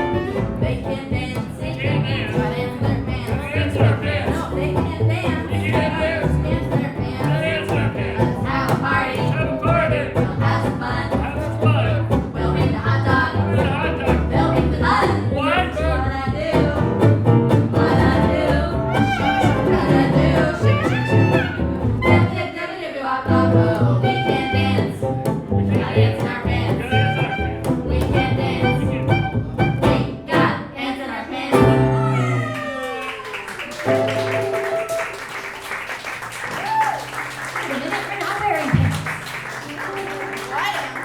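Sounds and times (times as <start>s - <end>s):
bass line: 0.0s - 22.5s, 23.3s - 30.7s, 31.6s - 32.6s
swing jazz band playing: 0.0s - 22.6s, 23.3s - 30.8s, 31.6s - 32.4s, 33.8s - 35.8s, 36.6s - 41.0s
person singing: 0.0s - 32.9s.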